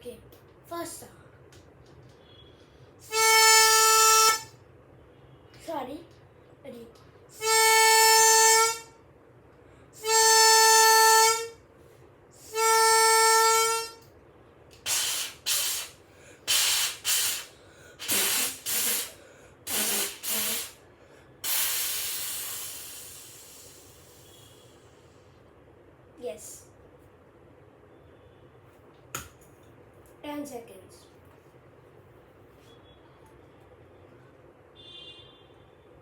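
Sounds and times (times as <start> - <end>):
train horn blasts: 3.0 - 4.5, 7.3 - 9.0, 10.0 - 11.6, 12.4 - 14.1
air brake hissing bursts: 14.8 - 25.4.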